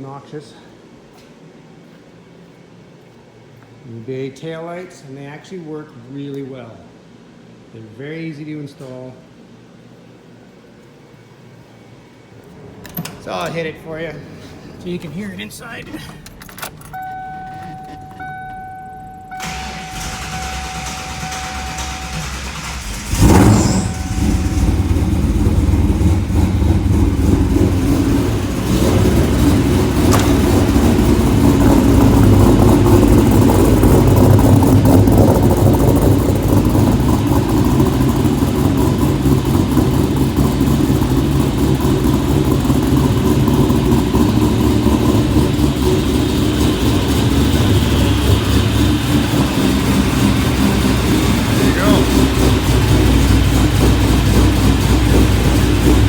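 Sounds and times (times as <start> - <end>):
car engine starting and running: 12.2 - 56.0.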